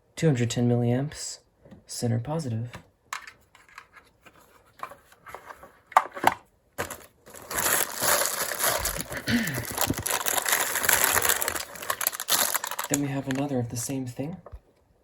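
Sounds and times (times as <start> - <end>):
plastic packaging crinkling: 6.8 - 14.0.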